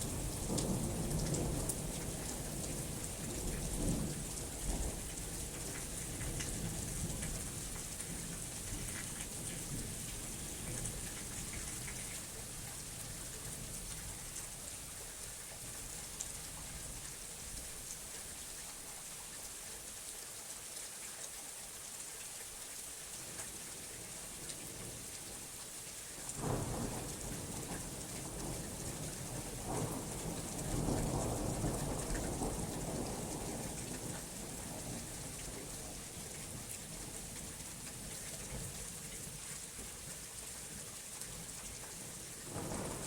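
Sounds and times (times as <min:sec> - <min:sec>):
steady rain hiss: 0:00.0 - 0:43.0
thunder rumbling: 0:42.5 - 0:43.0.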